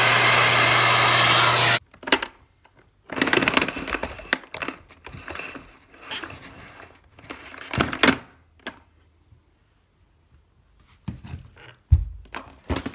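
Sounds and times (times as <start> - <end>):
rustling and scrapes: 3.6 - 7.9.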